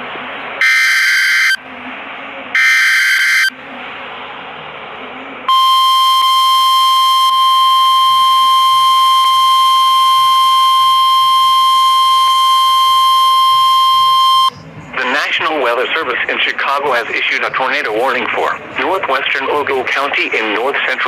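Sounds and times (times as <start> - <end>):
radio hiss: 0.0 - 21.0
steady loud alarm tone: 0.6 - 1.6, 2.6 - 3.5, 5.5 - 14.6.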